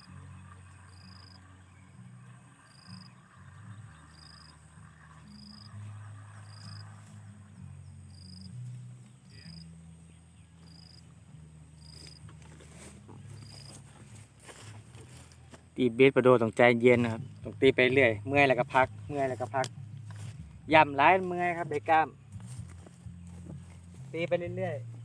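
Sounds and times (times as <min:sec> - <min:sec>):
low droning animal call: 0:00.0 - 0:07.8.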